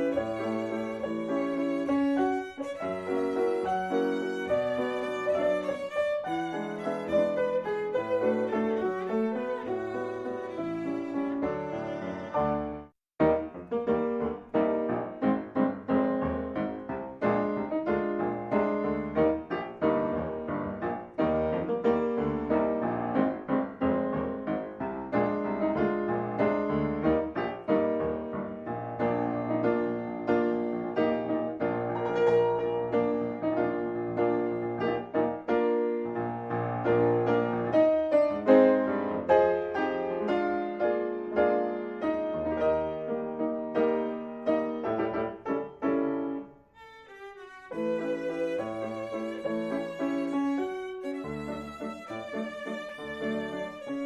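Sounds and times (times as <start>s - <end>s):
violin melody: 0.0s - 12.9s, 46.6s - 54.0s
piano accompaniment: 0.0s - 54.0s.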